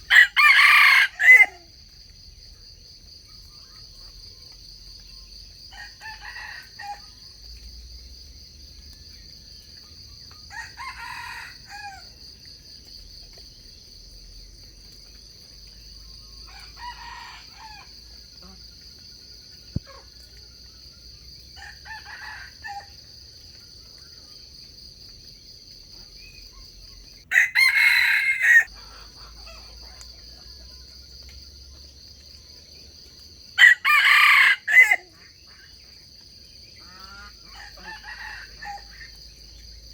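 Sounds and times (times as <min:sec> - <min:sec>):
rooster crowing: 0:00.1 - 0:01.7, 0:05.7 - 0:07.1, 0:10.5 - 0:12.1, 0:16.4 - 0:18.0, 0:21.6 - 0:23.0, 0:27.3 - 0:29.2, 0:33.6 - 0:35.2, 0:37.5 - 0:39.2.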